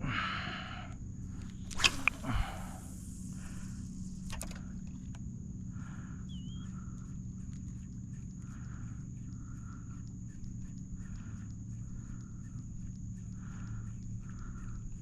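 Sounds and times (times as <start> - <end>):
fishing line paying out: 1.3 - 5.1
fishing reel click: 1.3 - 5.2
short reel clicks: 1.3 - 5.2
fishing rod swish: 1.5 - 4.4.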